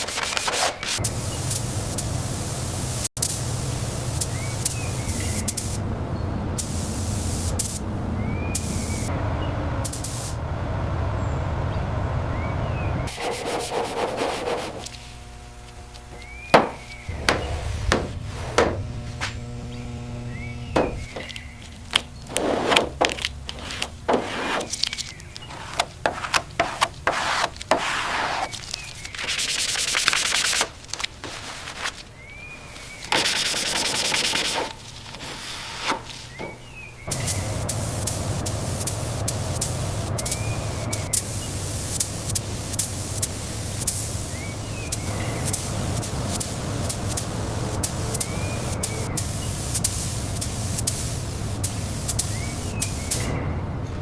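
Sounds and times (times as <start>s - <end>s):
sanding and rubbing: 0.0s - 1.0s, 13.1s - 15.2s, 22.3s - 32.0s, 33.1s - 36.3s
steady hum: 0.9s - 53.8s.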